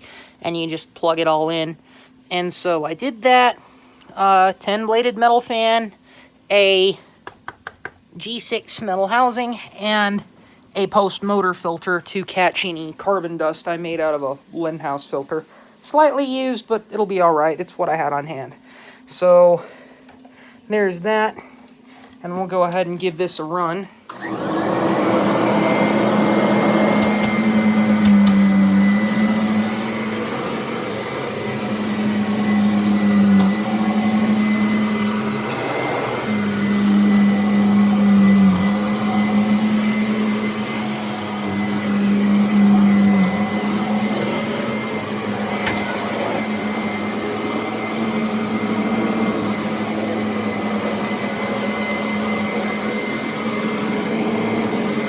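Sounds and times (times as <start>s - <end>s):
vacuum cleaner running: 23.9s - 55.0s.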